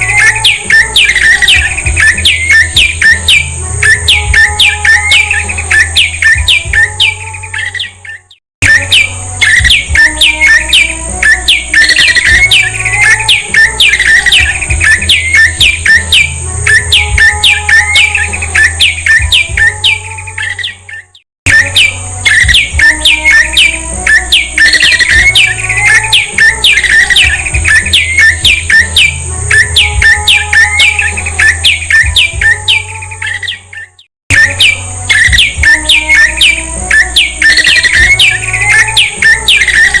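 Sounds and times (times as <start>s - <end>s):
bird chirping song: 0.0s - 40.0s.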